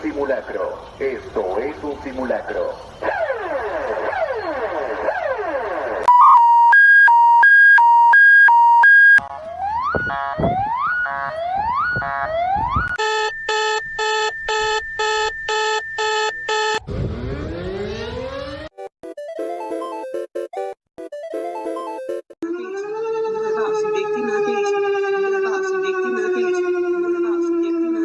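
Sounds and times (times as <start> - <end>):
even electronic beeps: 3.0 - 9.3, 11.9 - 22.7
electronic falling alarm sweeps: 3.1 - 18.7
rising alarm whoops: 6.1 - 9.2, 22.4 - 28.0
two-tone alarm beep: 6.1 - 9.3, 12.0 - 16.9.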